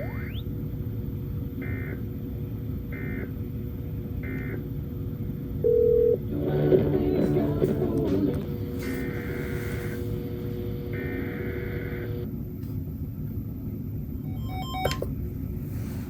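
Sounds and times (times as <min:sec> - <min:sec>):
broadcast hum and hiss: 0:00.0 - 0:16.0
broadcast audio jumble: 0:06.2 - 0:12.3.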